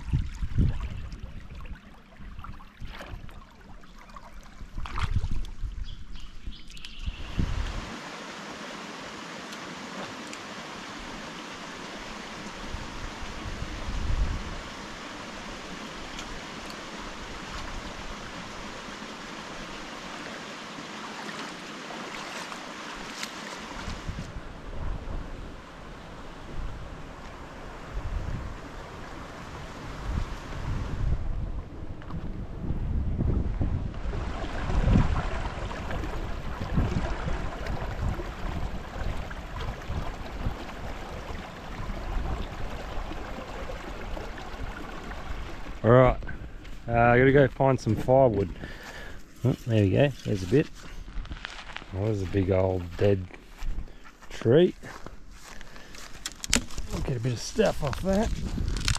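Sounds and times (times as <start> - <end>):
wind buffeting microphone: 0.0 - 3.4, 4.6 - 7.9, 12.6 - 14.8, 23.8 - 48.8, 56.4 - 58.9
creek water flowing: 0.0 - 58.9.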